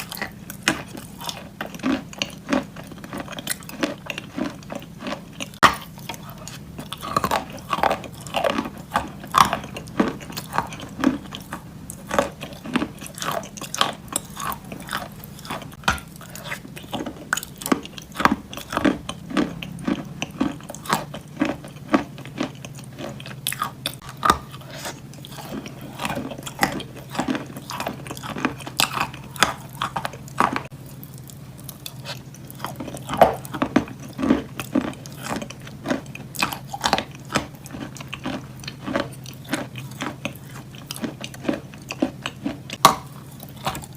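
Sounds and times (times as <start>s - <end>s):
wet chewing: 0.0s - 43.9s
chalk crunching: 24.0s - 30.8s.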